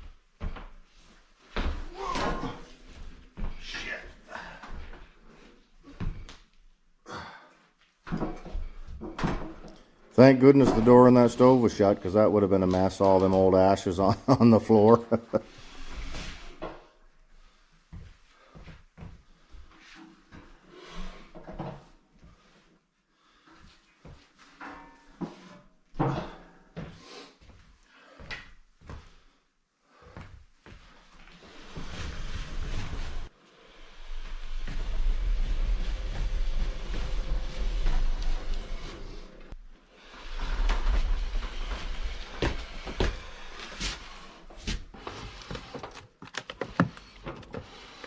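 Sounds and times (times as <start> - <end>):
scraping: 31.3 - 45.8.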